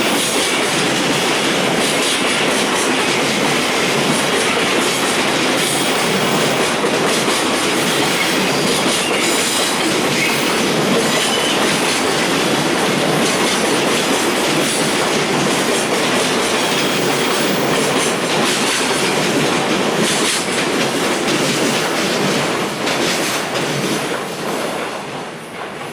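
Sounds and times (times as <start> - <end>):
freight wagons rumbling on rails: 0.0 - 25.9.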